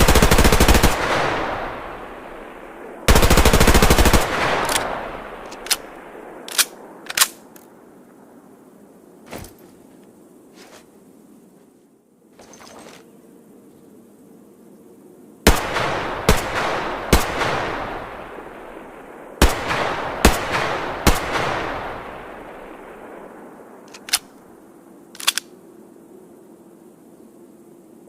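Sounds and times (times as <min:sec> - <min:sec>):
submachine gun single shots echoing: 0:00.0 - 0:07.5, 0:15.5 - 0:23.2
short clicks: 0:23.9 - 0:24.4, 0:25.2 - 0:25.5.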